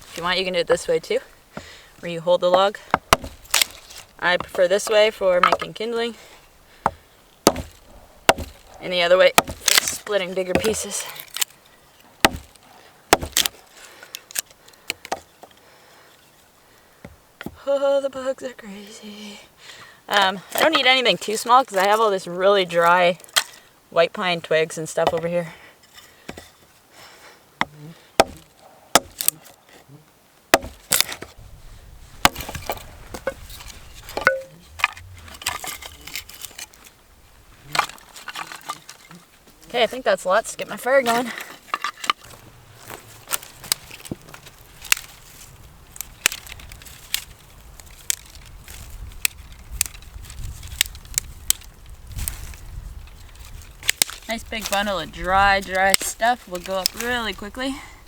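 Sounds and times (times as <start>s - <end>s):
split sticks falling: 0.0s - 15.6s, 20.1s - 23.7s, 28.2s - 29.8s, 30.5s - 31.4s, 32.2s - 57.7s
twigs snapping: 0.0s - 15.6s, 22.8s - 23.7s, 28.2s - 29.8s, 30.5s - 31.4s, 32.1s - 58.0s
axe chopping wood: 2.5s - 5.9s, 6.8s - 11.4s, 12.2s - 13.6s, 27.6s - 29.4s, 30.5s - 31.3s, 32.2s - 36.7s, 53.8s - 55.0s
light crackling: 28.5s - 58.0s.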